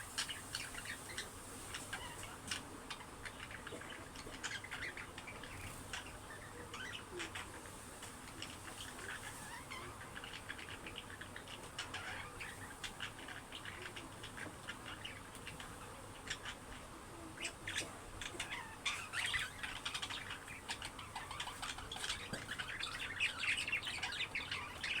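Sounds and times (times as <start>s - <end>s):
budgerigar chirps and squawks: 0.0s - 25.0s.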